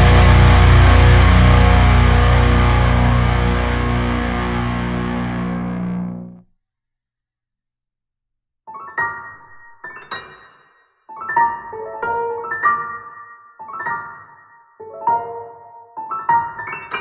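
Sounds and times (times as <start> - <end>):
distorted electric guitar chord: 0.0 - 6.4.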